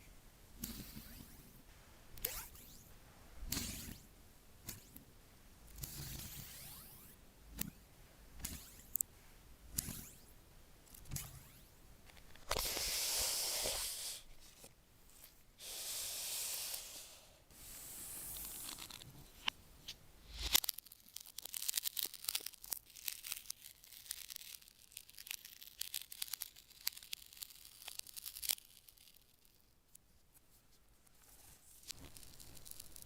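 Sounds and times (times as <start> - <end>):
crackling handling noise: 18.3 - 33.0
packaging ripping: 18.4 - 19.1, 20.3 - 29.6, 31.8 - 33.0.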